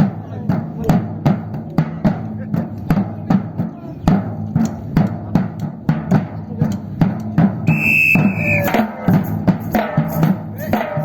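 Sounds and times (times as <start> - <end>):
percussion ensemble drumming: 0.0 - 11.0
whistle long note: 7.7 - 8.9.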